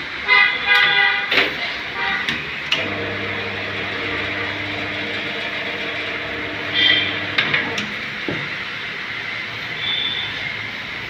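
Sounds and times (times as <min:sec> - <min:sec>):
roadside traffic: 0:00.0 - 0:11.0
vehicle engine humming: 0:02.9 - 0:08.8.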